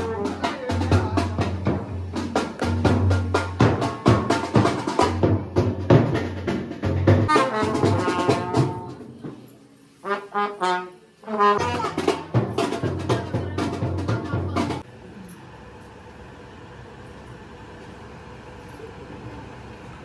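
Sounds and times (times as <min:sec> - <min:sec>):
drum beat: 0:00.0 - 0:09.5, 0:11.6 - 0:14.8
horns playing melody: 0:00.0 - 0:14.8.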